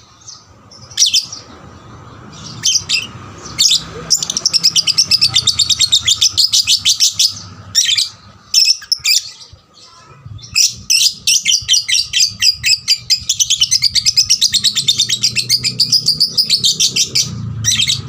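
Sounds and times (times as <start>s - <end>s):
lovebird chattering high chirps: 2.3s - 9.6s, 10.4s - 18.0s.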